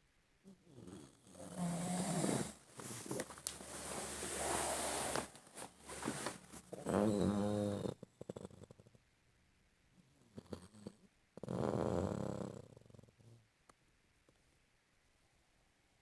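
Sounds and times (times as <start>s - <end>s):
person snoring: 0.9s - 5.3s, 6.7s - 7.9s.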